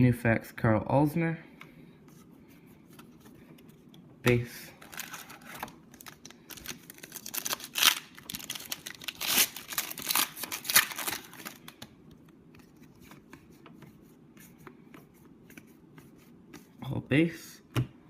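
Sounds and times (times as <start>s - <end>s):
card wrapper crinkling: 4.7s - 12.0s.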